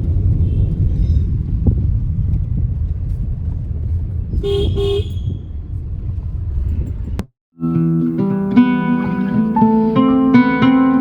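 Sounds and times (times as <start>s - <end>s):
vehicle road and engine rumble: 0.0s - 7.3s
vehicle horn short toots: 4.4s - 5.4s.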